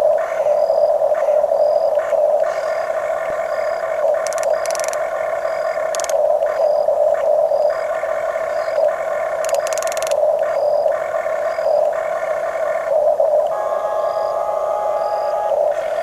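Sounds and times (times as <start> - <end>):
rapid clicking: 3.6 - 6.2, 8.8 - 10.2
electric motors whining: 13.5 - 16.0.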